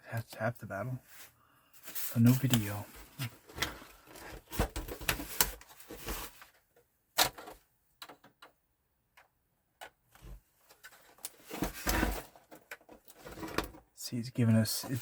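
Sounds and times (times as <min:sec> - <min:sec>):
hardware and cables clicking: 0:07.2 - 0:13.8.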